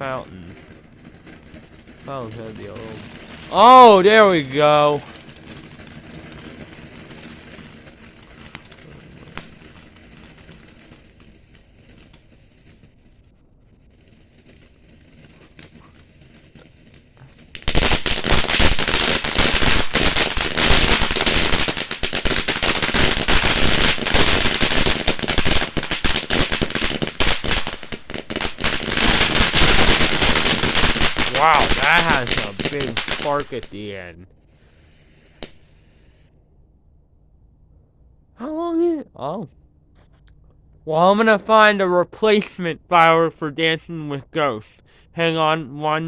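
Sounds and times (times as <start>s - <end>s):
firework fountain sputtering: 0.0s - 36.2s
firework fountain crackling: 0.0s - 36.3s, 40.9s - 46.0s.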